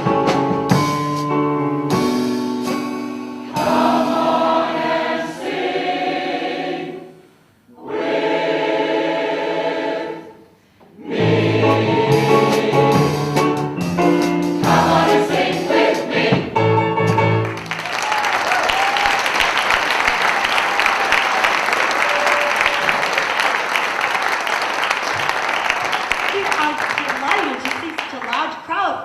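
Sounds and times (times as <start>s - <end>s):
chorus singing held chords: 3.1s - 17.4s.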